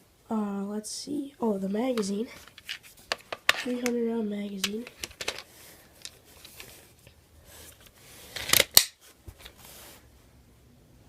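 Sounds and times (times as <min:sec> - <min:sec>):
magazine rattling: 0:04.6 - 0:06.8, 0:08.3 - 0:09.0.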